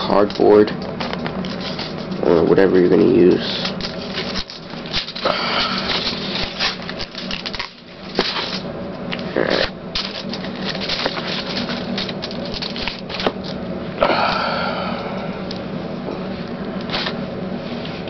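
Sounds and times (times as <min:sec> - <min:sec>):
foil rustling: 0:03.0 - 0:08.7, 0:10.0 - 0:13.6.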